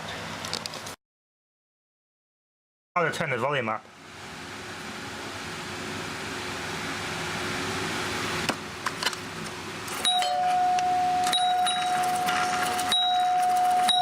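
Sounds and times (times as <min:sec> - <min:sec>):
amplifier hiss and hum: 0:03.0 - 0:14.0
doorbell chime tone: 0:10.0 - 0:14.0.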